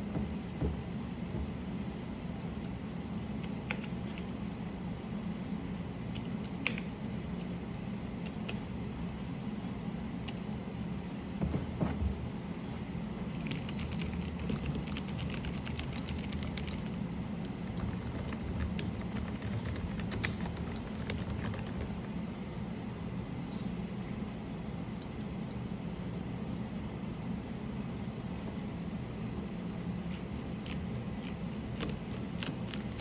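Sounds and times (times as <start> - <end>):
dull knocks: 0.0 - 1.7
steady low hum: 0.0 - 33.0.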